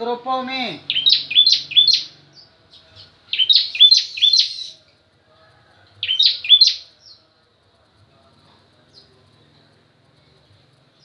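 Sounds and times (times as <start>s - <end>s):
bird chirping: 0.4s - 4.8s, 6.0s - 7.3s.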